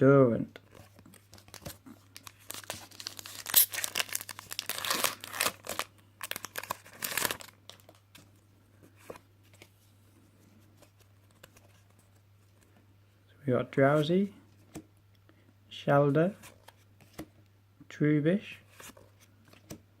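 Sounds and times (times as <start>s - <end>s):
foil wrapper tearing and crinkling: 2.2s - 8.0s.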